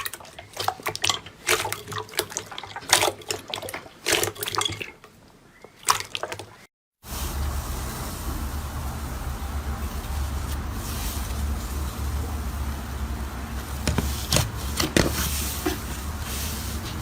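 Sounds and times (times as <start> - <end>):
steady low hum: 7.1 - 17.0.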